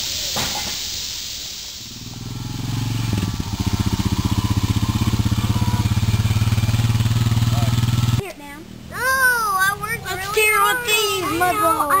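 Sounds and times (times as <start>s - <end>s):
motorcycle engine running: 2.0s - 8.2s.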